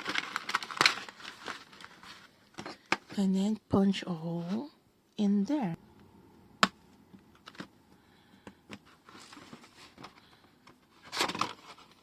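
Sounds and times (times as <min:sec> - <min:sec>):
paper rustling scrape: 0:08.7 - 0:12.0.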